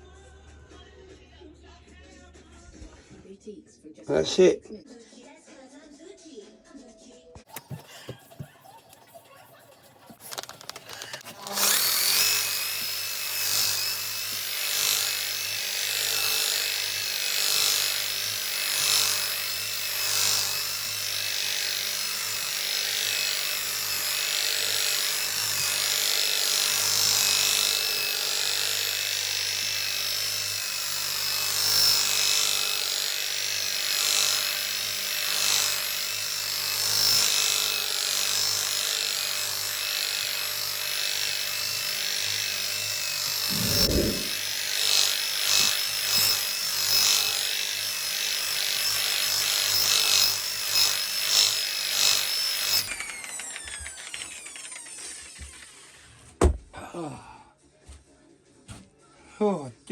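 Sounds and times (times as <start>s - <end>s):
electric sander running: 7.6s - 8.5s, 10.0s - 56.1s.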